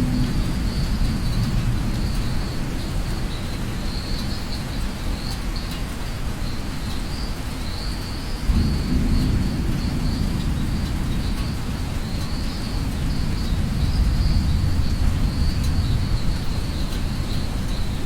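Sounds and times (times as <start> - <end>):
thunder rumbling: 0.0 - 4.2, 8.5 - 18.0
steady rain: 0.0 - 18.0.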